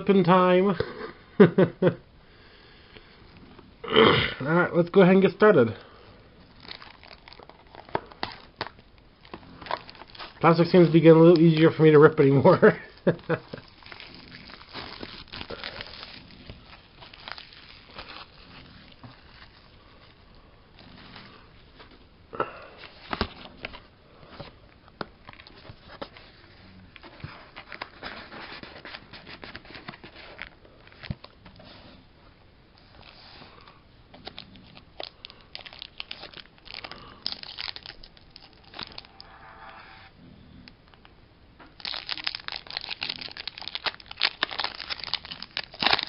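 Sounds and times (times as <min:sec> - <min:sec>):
plastic shrink wrap crinkling: 0:06.4 - 0:22.0, 0:22.6 - 0:31.8, 0:32.8 - 0:39.4, 0:41.7 - 0:46.0
plastic wrap snapping: 0:06.5 - 0:11.7, 0:13.0 - 0:19.7, 0:34.2 - 0:39.1, 0:41.7 - 0:46.0.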